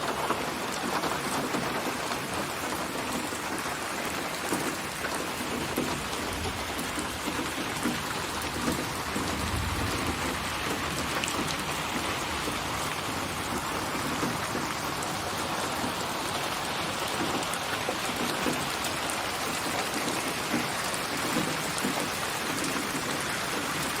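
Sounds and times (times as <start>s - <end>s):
steady rain falling: 0.0s - 24.0s
sharp raindrop hits: 5.1s - 24.0s.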